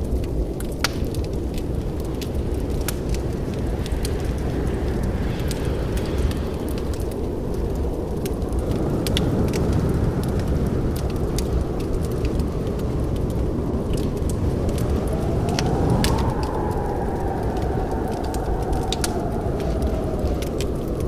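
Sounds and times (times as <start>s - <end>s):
fire crackling and popping: 0.0s - 21.0s
fire roaring: 0.0s - 21.0s.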